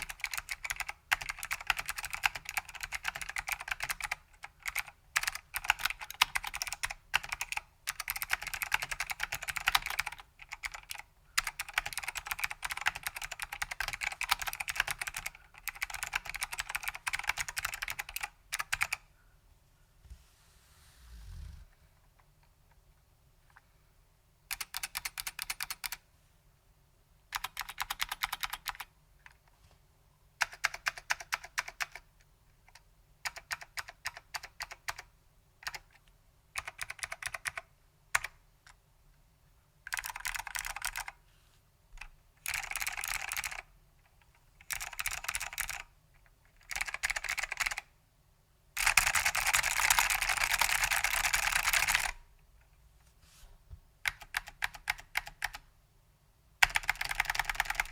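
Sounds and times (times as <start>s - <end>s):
typing on mechanical keyboard: 0.0s - 19.0s, 24.5s - 26.0s, 27.3s - 28.9s, 30.4s - 36.0s, 36.6s - 38.8s, 39.9s - 41.2s, 42.0s - 43.7s, 44.6s - 45.9s, 46.5s - 47.9s, 48.8s - 52.2s, 54.0s - 55.7s, 56.6s - 57.9s.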